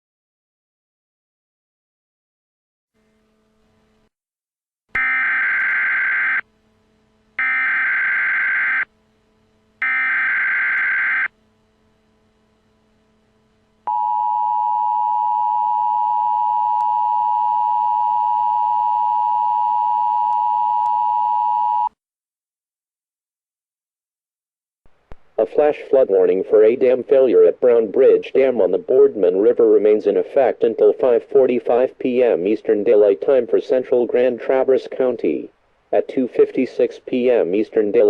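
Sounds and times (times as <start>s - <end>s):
two-tone attention signal: 5.0s - 6.4s, 9.8s - 11.3s
buzzing data bursts: 5.0s - 12.6s.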